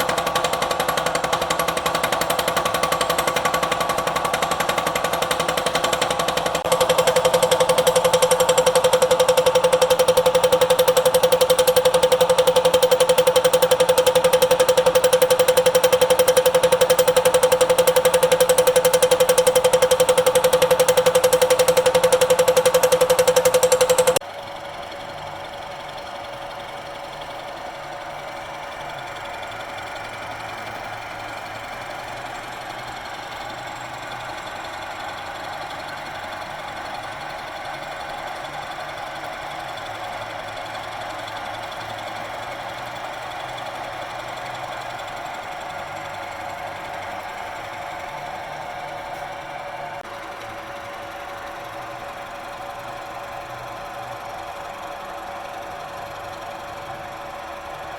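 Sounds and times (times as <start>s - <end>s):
milling machine cutting: 0.0s - 24.2s.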